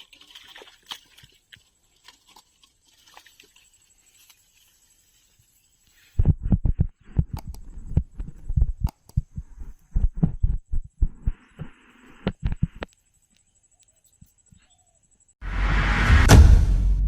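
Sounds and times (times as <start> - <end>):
dull low thumps: 6.2 - 11.7, 15.4 - 17.0.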